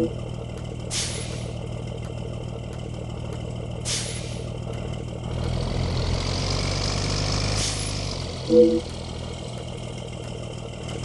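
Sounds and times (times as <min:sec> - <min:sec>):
bus engine idling and revving: 0:00.0 - 0:11.0.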